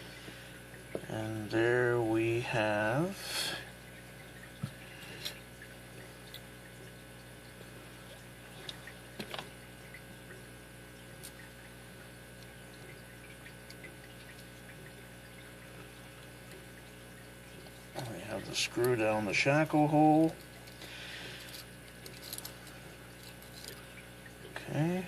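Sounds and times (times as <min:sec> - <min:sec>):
steady low hum: 0:00.0 - 0:25.0
small metal parts clicking: 0:21.4 - 0:22.6, 0:23.2 - 0:23.8.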